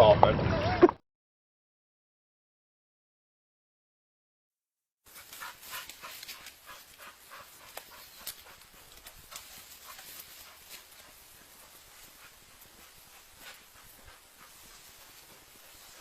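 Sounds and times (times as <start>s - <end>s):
dog panting: 5.1s - 16.0s.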